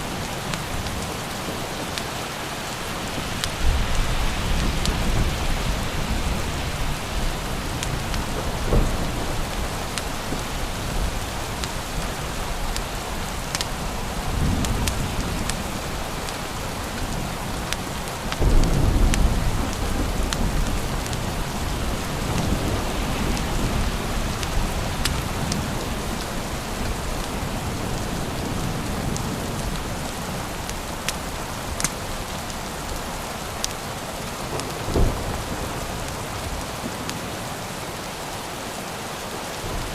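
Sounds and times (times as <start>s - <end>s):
heavy rain falling: 0.0s - 39.9s
thunder rolling: 3.1s - 11.7s, 18.3s - 26.2s, 34.5s - 37.2s.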